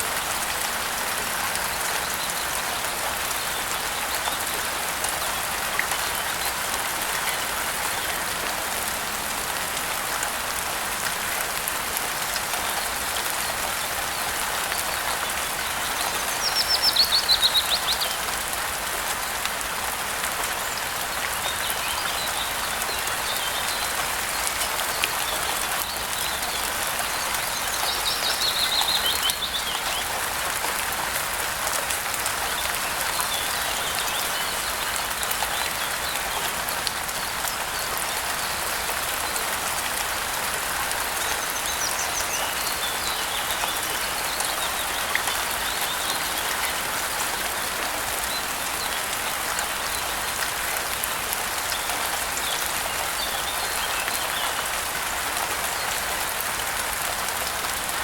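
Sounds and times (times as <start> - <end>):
steady rain falling: 0.0 - 58.0
small birds chirping: 14.7 - 18.2, 20.6 - 30.1.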